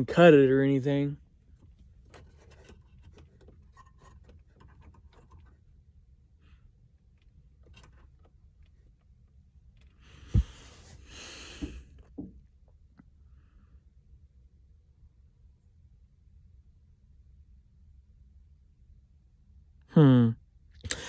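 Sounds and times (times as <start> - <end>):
man sighing heavily: 11.2 - 11.8.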